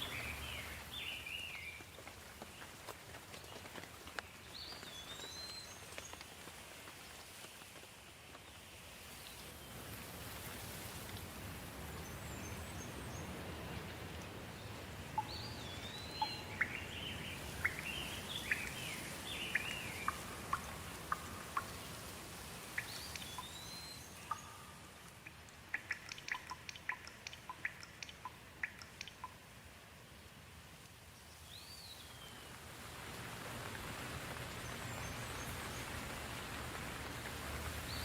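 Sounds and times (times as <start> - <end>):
songbirds chirping and whistling: 0.0 - 1.8, 4.2 - 6.2, 12.0 - 29.4
steady rain: 0.0 - 38.0
water drips: 9.0 - 29.6.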